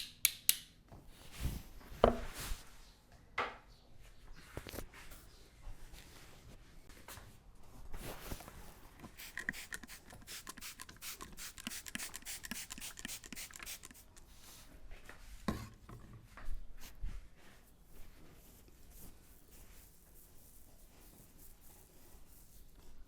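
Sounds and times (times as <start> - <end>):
hands rubbing and scratching scalp: 9.1 - 14.3.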